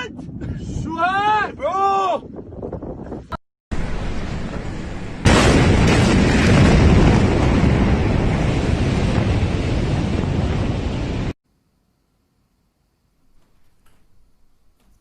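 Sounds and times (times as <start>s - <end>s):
massive explosion rumble: 3.8s - 11.4s.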